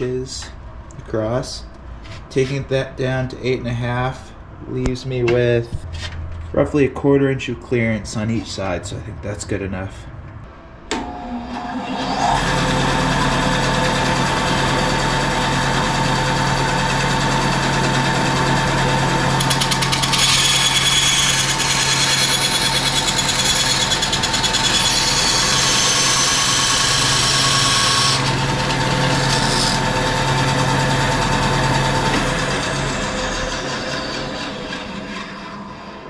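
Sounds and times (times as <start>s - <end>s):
high-pitched cutting of metal: 19.4s - 30.8s
power tool motor hum: 19.4s - 34.9s.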